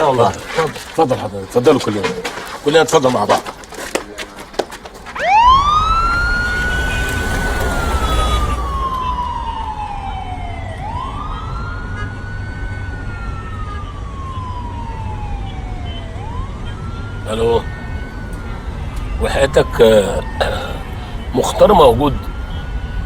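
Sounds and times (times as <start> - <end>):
police siren wailing: 5.1 - 23.0.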